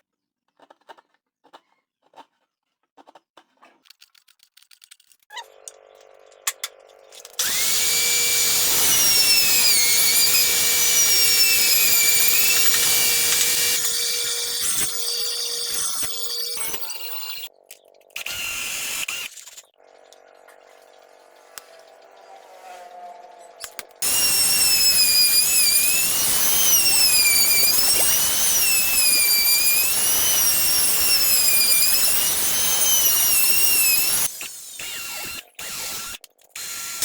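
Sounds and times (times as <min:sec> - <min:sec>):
power tool motor whining: 0:06.5 - 0:17.5, 0:18.2 - 0:19.6, 0:23.5 - 0:37.0.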